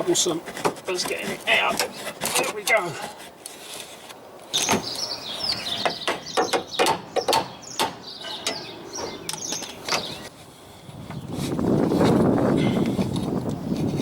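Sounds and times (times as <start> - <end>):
metallic clicks knocks and scrapes: 5.8 - 10.3.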